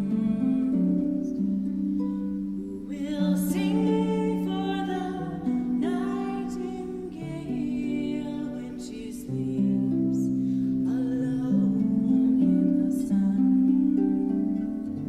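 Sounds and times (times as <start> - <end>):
person singing: 0.0 - 15.0.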